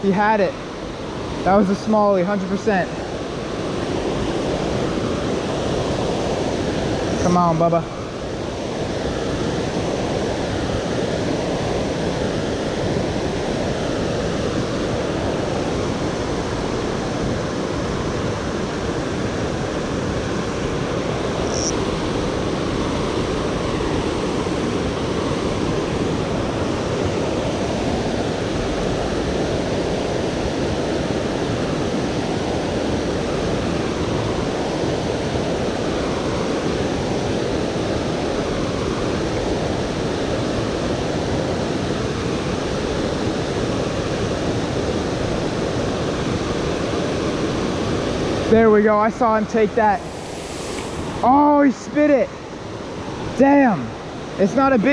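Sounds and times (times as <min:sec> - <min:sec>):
water rushing over dam: 0:00.0 - 0:54.9
high chirp: 0:21.4 - 0:21.8.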